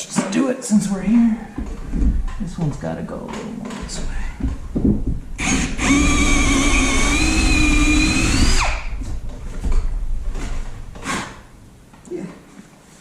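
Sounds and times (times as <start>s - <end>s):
electric drill whining: 5.4s - 9.0s.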